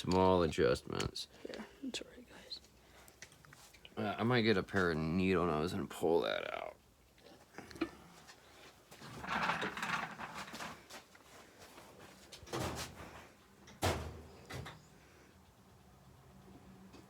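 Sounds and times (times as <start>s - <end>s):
scraping and rustling of tools: 7.7s - 14.9s.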